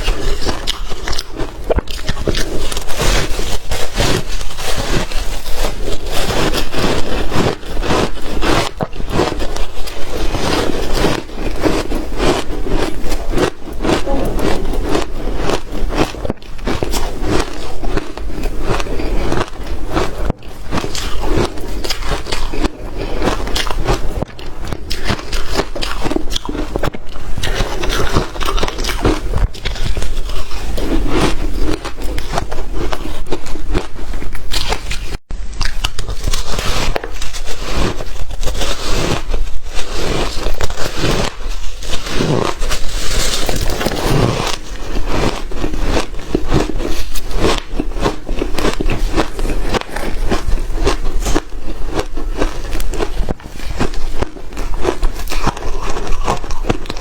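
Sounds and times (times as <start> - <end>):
ice crunching being chewed: 0.0 - 57.0.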